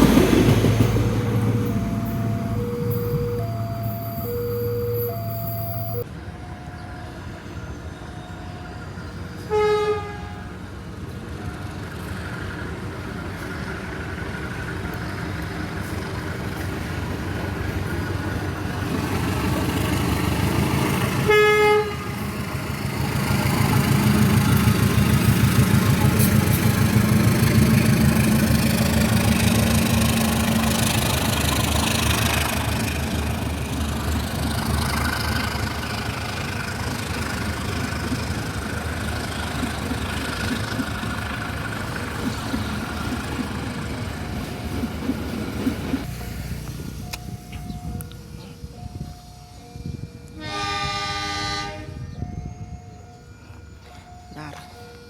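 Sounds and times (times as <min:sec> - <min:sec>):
passing train rumble: 0:00.0 - 0:55.0
train horn toots: 0:09.5 - 0:10.6, 0:21.2 - 0:22.3, 0:50.3 - 0:52.2.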